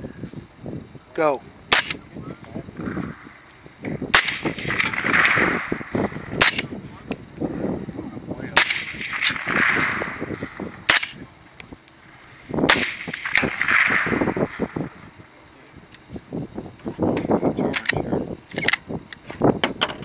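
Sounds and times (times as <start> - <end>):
suppressed rifle shots: 1.7 - 2.0, 4.1 - 6.8, 8.6 - 11.2, 12.6 - 15.0
hissing echo: 2.7 - 6.9, 8.5 - 11.4, 12.0 - 15.3.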